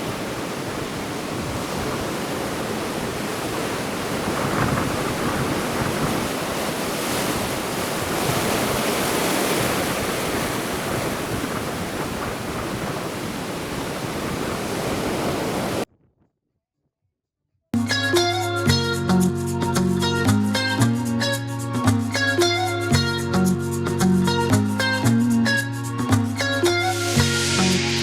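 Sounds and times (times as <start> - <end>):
sea waves washing onto shore: 0.0 - 15.9
wind buffeting microphone: 0.0 - 15.9.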